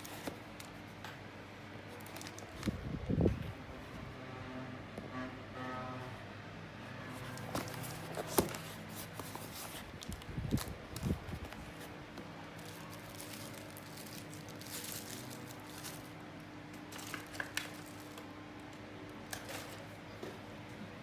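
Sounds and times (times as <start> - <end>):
packaging rustling and crinkling: 1.9 - 3.3, 7.2 - 18.3.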